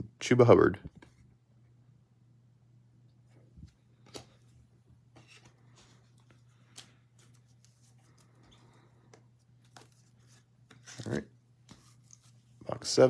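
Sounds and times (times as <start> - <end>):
handling of cards and packaging: 3.6 - 13.0.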